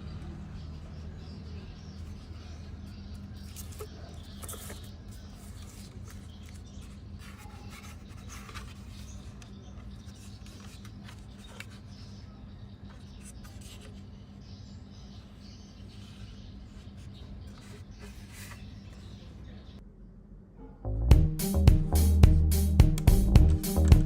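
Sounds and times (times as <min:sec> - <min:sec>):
faint scratching and rubbing: 0:02.0 - 0:12.3, 0:12.9 - 0:14.6, 0:15.3 - 0:19.3
steady low hum: 0:20.8 - 0:24.0.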